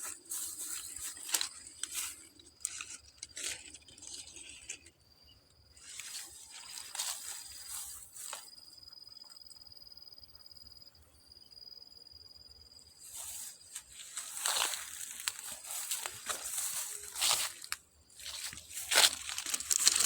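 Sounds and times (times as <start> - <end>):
leaves rustling and crunching: 0.0 - 4.9, 5.8 - 8.5, 13.1 - 20.0.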